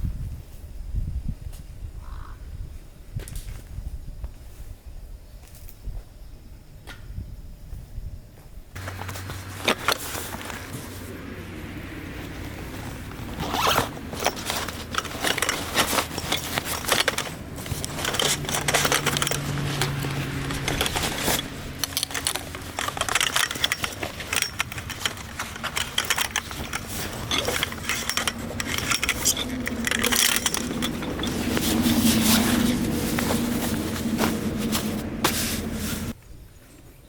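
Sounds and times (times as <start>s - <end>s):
fabric and bags rustling: 8.8s - 36.2s
zip being pulled: 12.7s - 36.1s.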